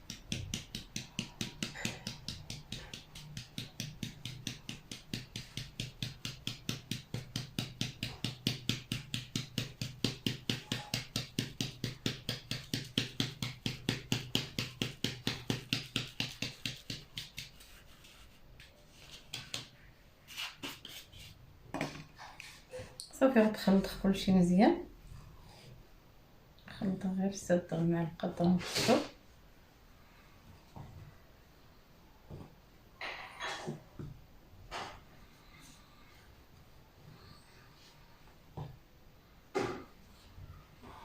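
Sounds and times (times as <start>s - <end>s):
batter mixed in a bowl: 0.0s - 21.4s.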